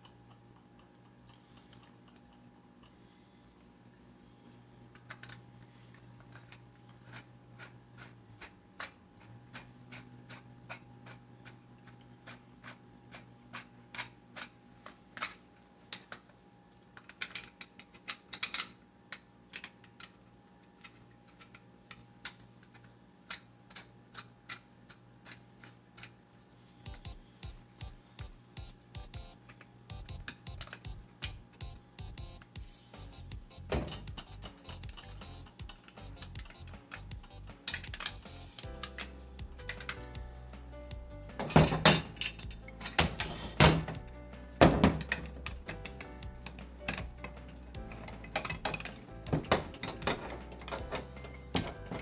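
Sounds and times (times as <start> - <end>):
faint steady hum: 0.0 - 52.0
wrench clinking on metal: 33.8 - 40.2, 41.4 - 44.0, 44.6 - 52.0.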